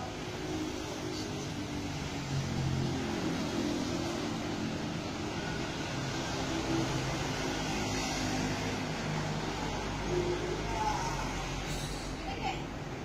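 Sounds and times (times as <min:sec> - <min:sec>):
hum of passing engines: 0:00.0 - 0:13.0
tyres hissing on wet road: 0:10.6 - 0:12.5.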